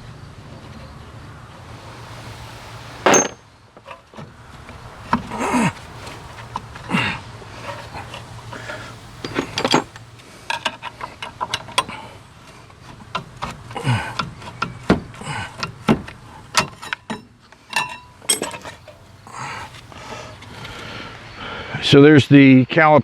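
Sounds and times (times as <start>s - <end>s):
metallic clinks of hand tools: 3.1s - 3.4s, 17.7s - 19.0s.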